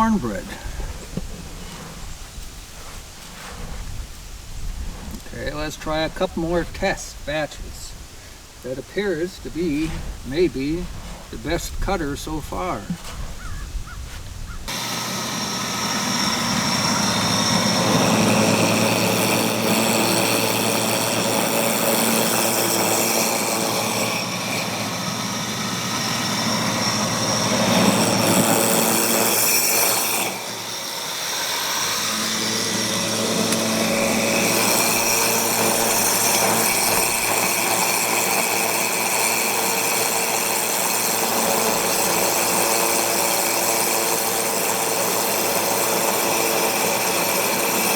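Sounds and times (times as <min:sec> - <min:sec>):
grain grinder running: 0:00.0 - 0:02.2, 0:14.7 - 0:47.9.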